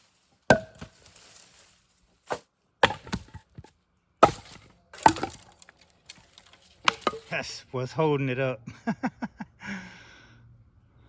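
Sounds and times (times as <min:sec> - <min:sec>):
sharp wooden knocks: 0:00.5 - 0:00.8, 0:04.2 - 0:05.5, 0:06.8 - 0:07.3.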